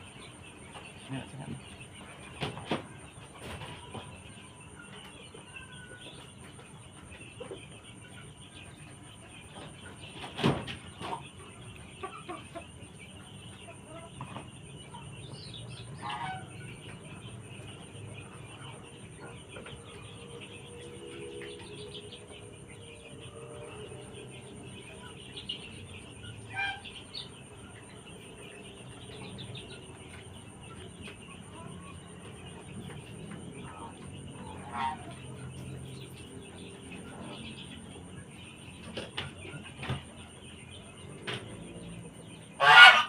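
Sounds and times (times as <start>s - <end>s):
chickens clucking: 0.0s - 43.0s
steady low hum: 0.0s - 43.0s
chicken squawks: 42.6s - 43.0s.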